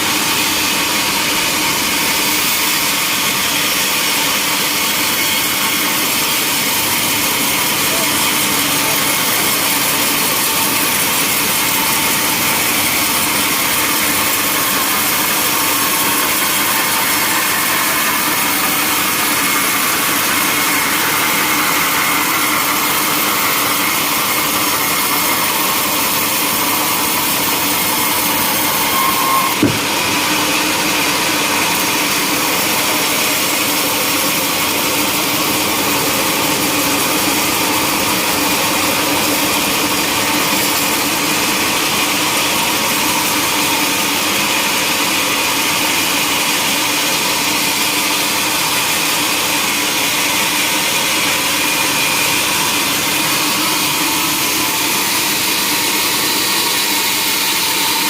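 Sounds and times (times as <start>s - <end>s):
sawmill saw cutting log: 0.0s - 58.0s
short knock: 29.4s - 30.0s.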